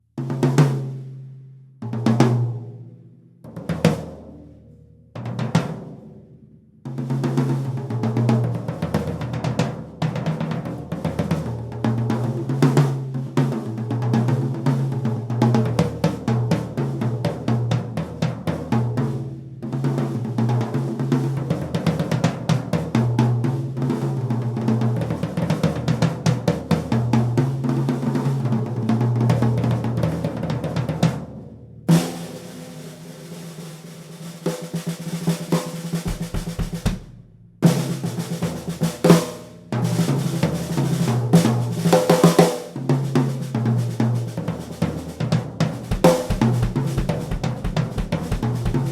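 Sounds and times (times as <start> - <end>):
drum kit beats and fills: 31.9 - 48.9
drum hit ringing: 45.9 - 48.9.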